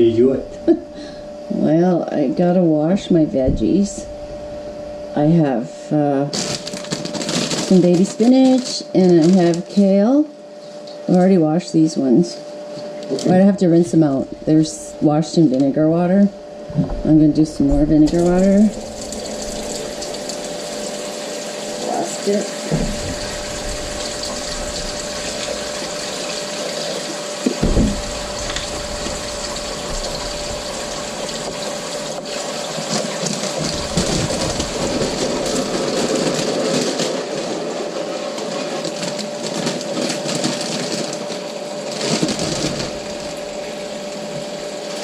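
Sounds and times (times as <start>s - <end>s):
steady hum: 0.0s - 45.0s
tap water filling a container: 18.0s - 37.5s.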